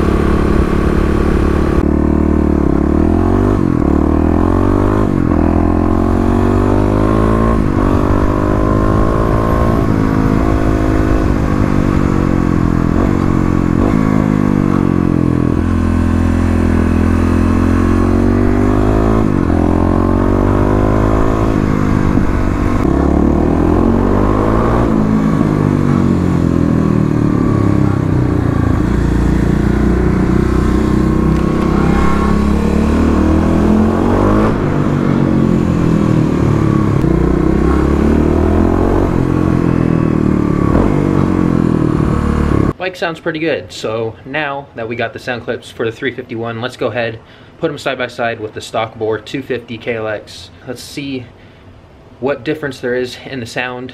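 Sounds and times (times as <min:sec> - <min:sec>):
dirt bike engine revving: 0:00.0 - 0:42.8.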